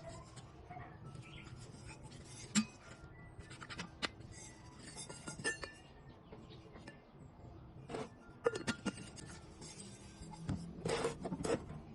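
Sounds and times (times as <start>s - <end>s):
metal tumbler clinking: 4.3s - 6.0s, 8.0s - 9.8s.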